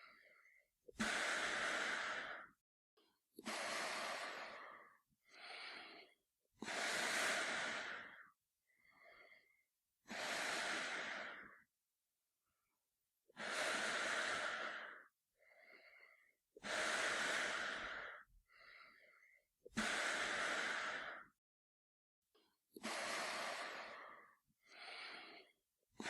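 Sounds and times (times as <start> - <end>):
man breathing through gas mask: 0.0 - 2.6, 3.4 - 11.6, 13.3 - 21.4, 22.8 - 25.6.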